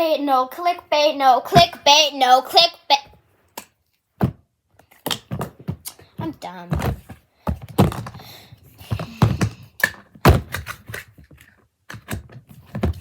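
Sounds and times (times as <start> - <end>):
hard objects tapping and knocking: 5.0 - 13.0.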